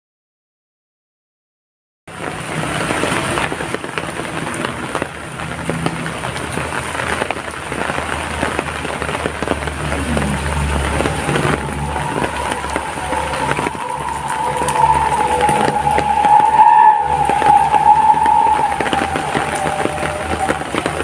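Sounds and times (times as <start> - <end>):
heavy rain falling: 2.1 - 21.0
low hum: 9.6 - 21.0.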